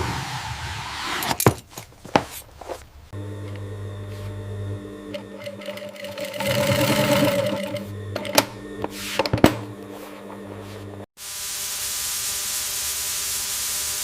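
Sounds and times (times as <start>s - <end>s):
small machine whirring: 3.2s - 14.0s.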